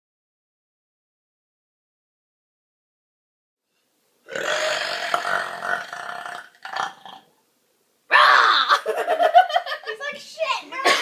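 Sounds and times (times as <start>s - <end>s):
girl burping: 4.3s - 7.2s, 10.8s - 11.0s
loud outburst: 8.1s - 8.9s.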